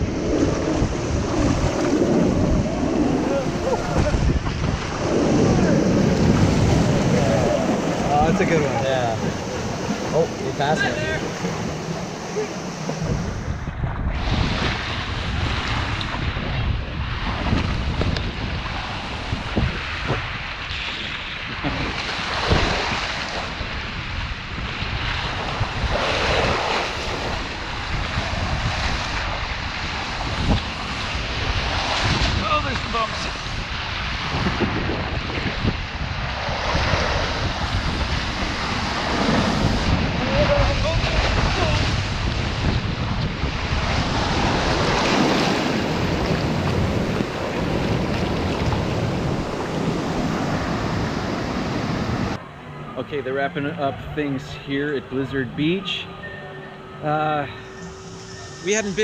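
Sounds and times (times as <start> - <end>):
wind buffeting microphone: 0.0 - 52.5
water rushing and splashing: 0.0 - 56.3.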